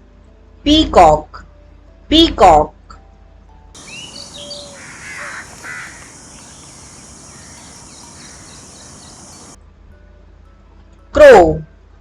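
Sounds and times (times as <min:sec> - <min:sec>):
harsh bird calls: 0:03.8 - 0:09.6
small birds chirping: 0:03.8 - 0:09.6
steady hiss: 0:03.8 - 0:09.6.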